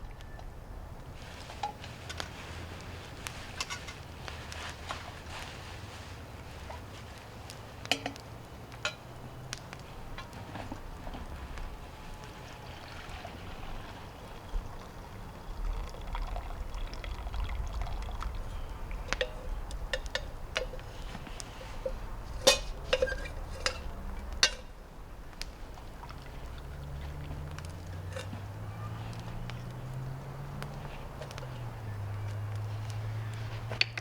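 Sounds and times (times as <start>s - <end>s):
liquid pouring: 12.5s - 20.8s
sharp clinks and knocks: 21.7s - 24.7s.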